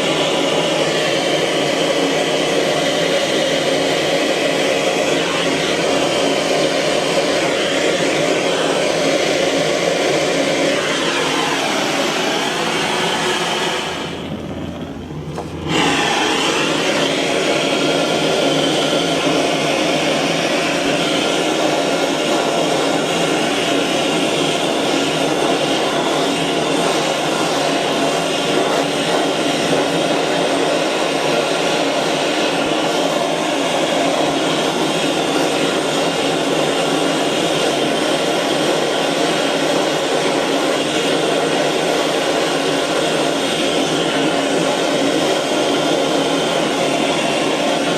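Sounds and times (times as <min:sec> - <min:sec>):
blowtorch flame rushing: 0:00.0 - 0:47.9.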